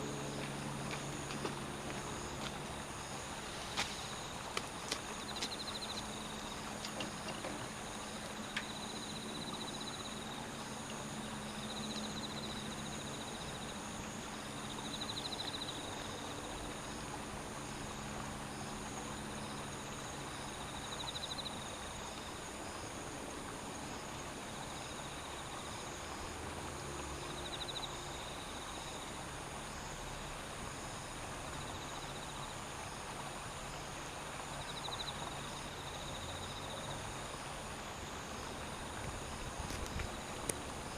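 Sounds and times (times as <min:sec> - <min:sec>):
low background noise: 0:00.0 - 0:40.9
insects singing: 0:05.2 - 0:10.3.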